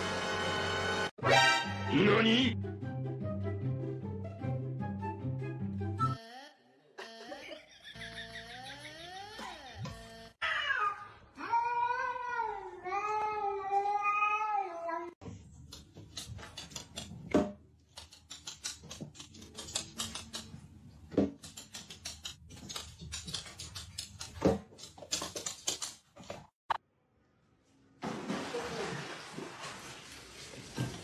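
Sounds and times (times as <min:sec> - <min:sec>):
irregular clicks and knocks: 0:15.6 - 0:26.5.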